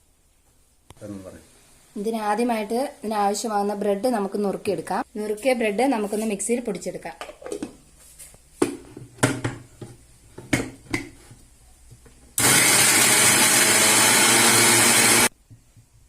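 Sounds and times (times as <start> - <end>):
electric mixer grinder grinding bread: 12.4 - 15.3.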